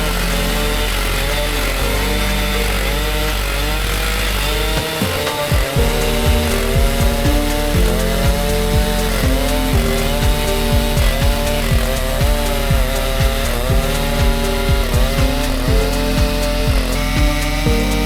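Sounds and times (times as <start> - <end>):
chainsaw cutting log: 0.0 - 18.0
background music with beat: 4.8 - 18.0.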